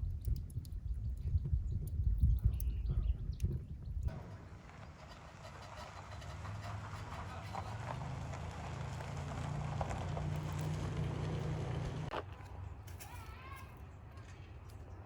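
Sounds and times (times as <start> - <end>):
vehicle engine humming: 4.1 - 12.3.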